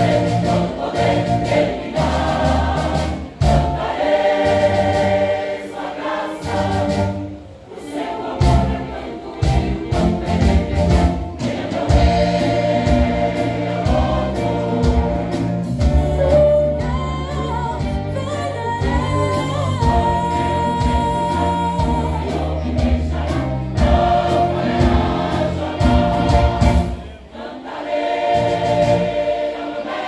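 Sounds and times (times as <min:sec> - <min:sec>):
band with steady beat: 0:00.0 - 0:05.4, 0:08.4 - 0:17.2, 0:18.8 - 0:27.3
choir singing gospel: 0:00.0 - 0:30.0.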